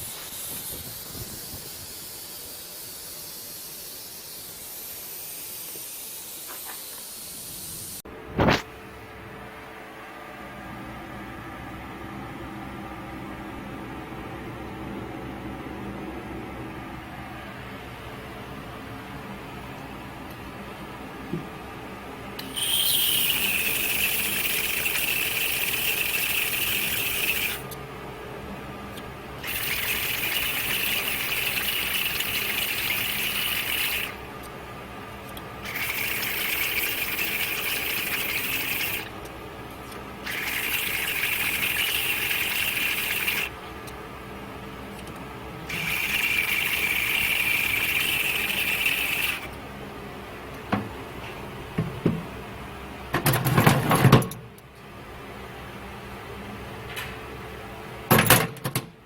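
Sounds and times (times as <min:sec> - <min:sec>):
nozzle hissing blasts: 0:00.0 - 0:08.6, 0:22.4 - 0:27.7, 0:29.4 - 0:34.3, 0:35.6 - 0:39.2, 0:40.2 - 0:43.6, 0:45.7 - 0:49.5.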